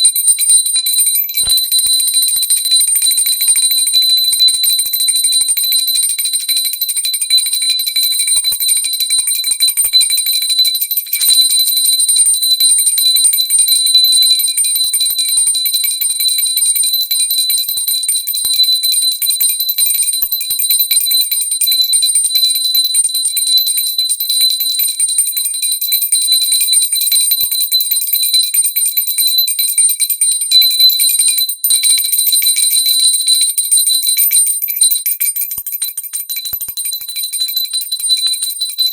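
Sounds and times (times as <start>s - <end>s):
brass bell ringing rapidly: 1.0s - 1.8s, 33.6s - 38.9s.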